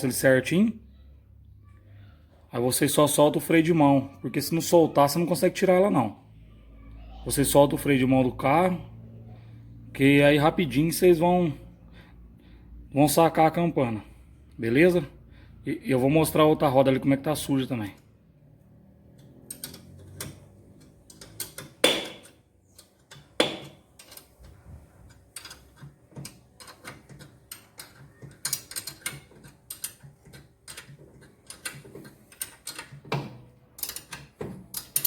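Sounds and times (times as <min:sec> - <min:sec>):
wrench clicking on bolt: 0:19.1 - 0:35.0
metal knocks: 0:21.8 - 0:22.4, 0:23.4 - 0:23.8.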